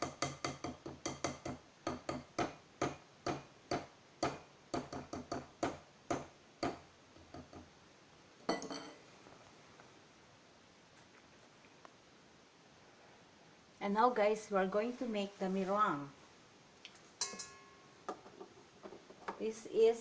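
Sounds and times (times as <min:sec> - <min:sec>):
utensil clinking against a bowl: 0:17.2 - 0:17.8.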